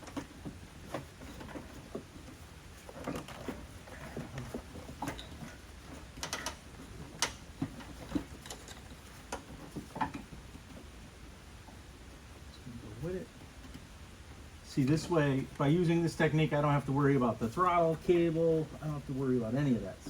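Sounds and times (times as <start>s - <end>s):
hand tools clicking and knocking: 3.0s - 10.3s.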